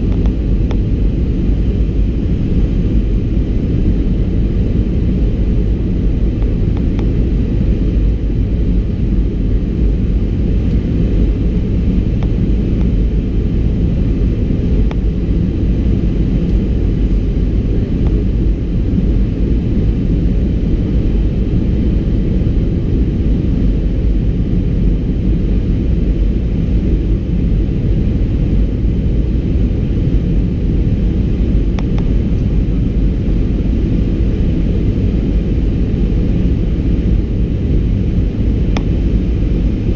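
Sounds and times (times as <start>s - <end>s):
airplane cabin engine rumble: 0.0s - 39.9s.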